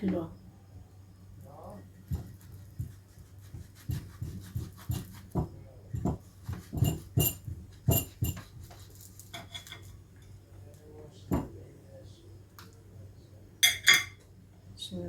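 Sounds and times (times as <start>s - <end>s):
knife and utensils clinking on plate: 6.0s - 8.5s, 9.2s - 10.4s, 13.6s - 14.2s.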